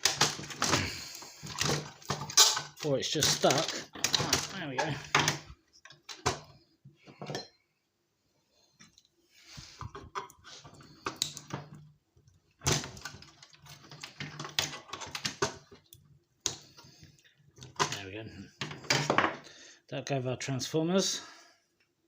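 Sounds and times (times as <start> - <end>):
electronic parts clattering: 0.0 - 6.5, 12.6 - 15.9.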